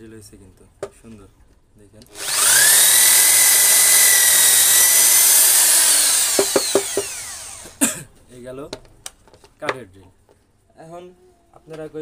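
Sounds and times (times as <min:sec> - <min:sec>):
electric drill whining: 0:02.1 - 0:07.8.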